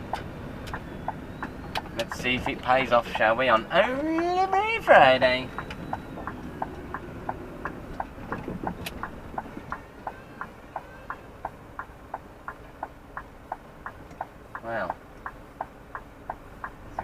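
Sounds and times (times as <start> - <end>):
indicator flasher ticking: 5.0 - 17.0.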